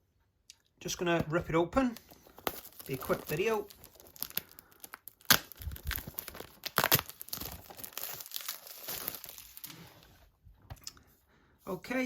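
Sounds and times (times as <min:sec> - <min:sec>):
packaging crinkling: 0:01.9 - 0:10.1
packaging tearing: 0:02.0 - 0:10.0.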